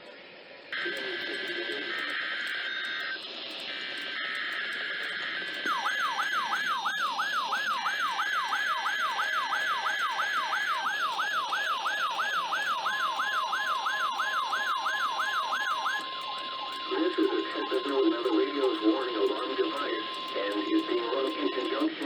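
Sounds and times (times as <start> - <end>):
electronic siren alarm: 0.7 - 22.0.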